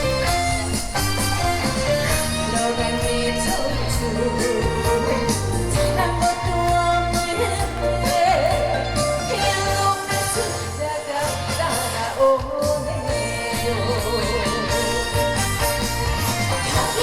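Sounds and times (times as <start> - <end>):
backing track with bass line: 0.0 - 17.0
person singing: 0.0 - 17.0.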